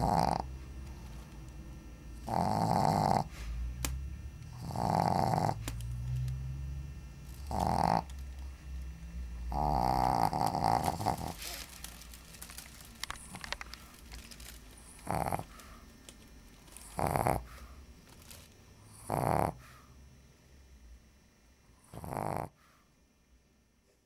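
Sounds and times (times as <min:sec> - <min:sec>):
dog snoring: 0:00.0 - 0:00.6, 0:02.2 - 0:03.6, 0:04.4 - 0:06.2, 0:07.2 - 0:08.6, 0:09.3 - 0:11.8, 0:14.8 - 0:15.9, 0:16.7 - 0:17.8, 0:18.8 - 0:19.9, 0:21.7 - 0:22.9.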